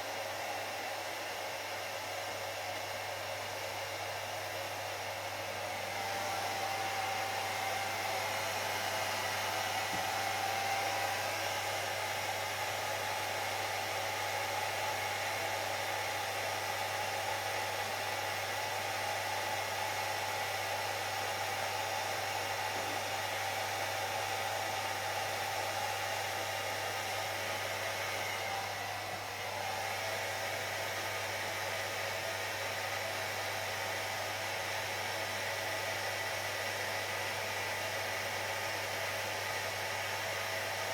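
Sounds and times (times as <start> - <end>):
hair dryer blowing: 0.0 - 40.9.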